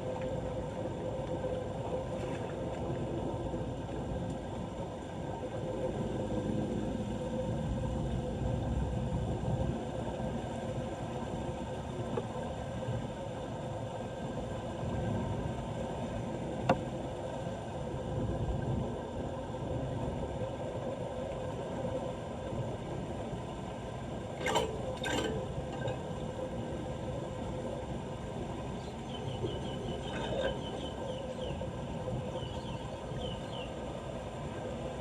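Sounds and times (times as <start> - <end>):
water rushing: 23.8 - 33.0.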